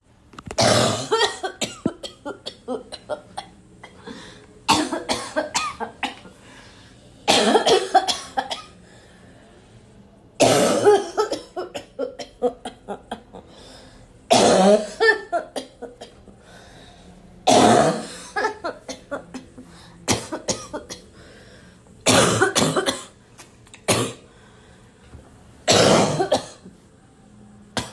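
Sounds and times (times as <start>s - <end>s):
person coughing harshly: 0.6s - 6.3s, 7.3s - 8.7s, 10.4s - 13.3s, 14.3s - 16.2s, 17.5s - 19.5s, 20.1s - 21.0s, 22.0s - 23.2s, 23.9s - 24.2s, 25.7s - 26.6s.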